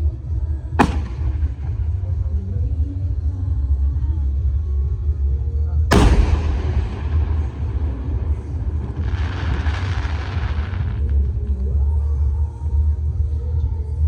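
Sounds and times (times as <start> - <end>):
steady low rumble: 0.0 - 14.0
firework shell bang: 0.8 - 2.2, 5.9 - 11.1.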